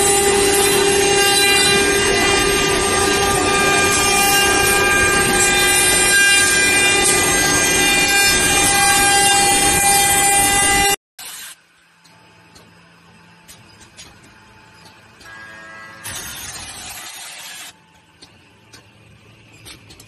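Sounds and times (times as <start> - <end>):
woodworking machine rushing and whining: 0.0 - 11.0, 14.1 - 17.8.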